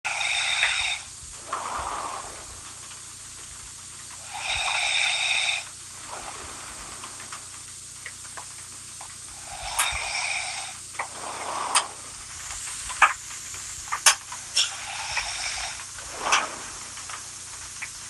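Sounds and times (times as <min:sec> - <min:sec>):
woman snoring: 0:04.2 - 0:05.7, 0:09.4 - 0:10.8.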